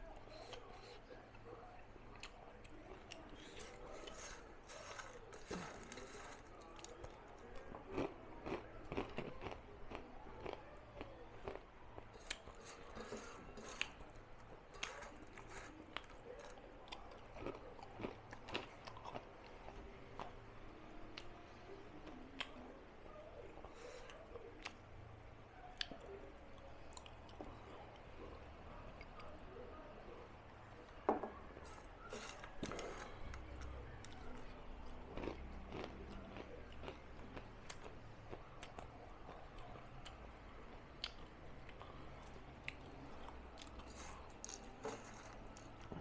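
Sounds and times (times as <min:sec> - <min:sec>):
person chewing crunchy food: 0:02.1 - 0:19.3, 0:31.6 - 0:38.9, 0:41.0 - 0:46.0.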